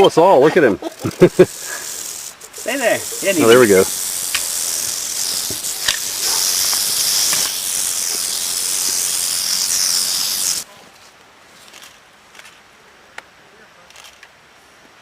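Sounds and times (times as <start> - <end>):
rattlesnake rattling: 0.8 - 10.7.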